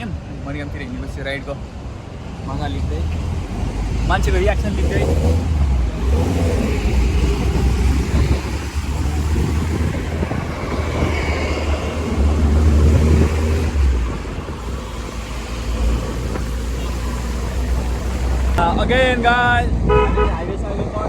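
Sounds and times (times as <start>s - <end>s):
road noise rumble: 0.0s - 21.0s
car engine running: 2.9s - 11.3s, 11.9s - 18.6s.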